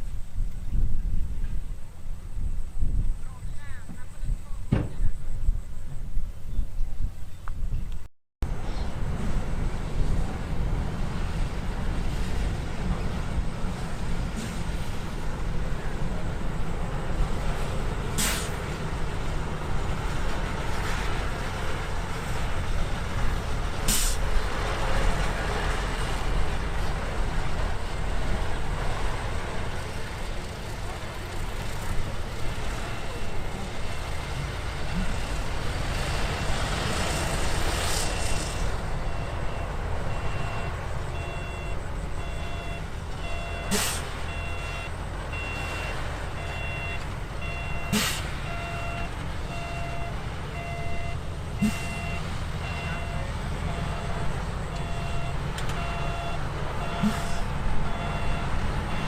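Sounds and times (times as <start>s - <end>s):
heavy diesel engines running: 8.4s - 59.0s
air brake hiss: 18.2s - 18.6s, 23.9s - 24.3s, 43.7s - 44.2s, 47.9s - 48.4s, 51.6s - 52.0s, 57.0s - 57.5s
reversing alarm beeping: 32.7s - 35.1s, 38.0s - 59.0s.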